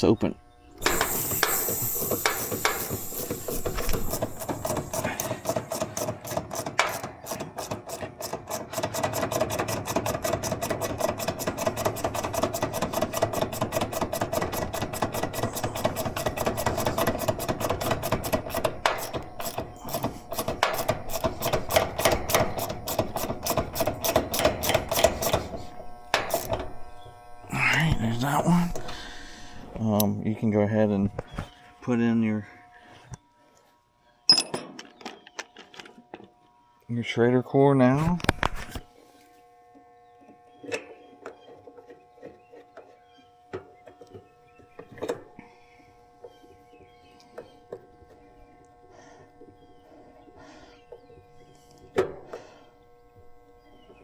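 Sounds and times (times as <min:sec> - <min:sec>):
steady hum: 0:00.0 - 0:33.6
high hiss: 0:00.8 - 0:05.8
ratchet wrench clicking: 0:00.8 - 0:25.4.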